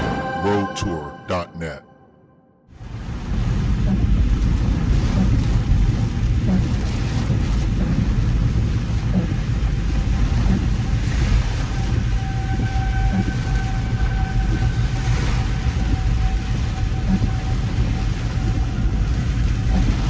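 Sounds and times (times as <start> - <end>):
heavy rain: 2.8 - 20.0
strong wind: 2.8 - 20.0
tornado siren wailing: 11.0 - 20.0.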